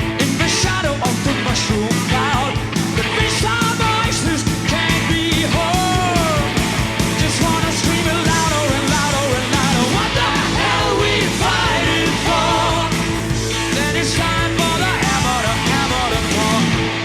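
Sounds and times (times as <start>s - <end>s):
rock band playing live: 0.0s - 17.0s
sung lead melody: 4.6s - 17.0s.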